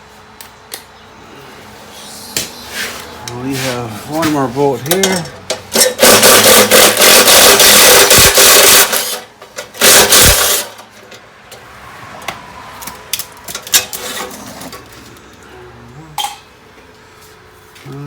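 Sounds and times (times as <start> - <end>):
power driver spinning bolt: 5.8 - 10.8.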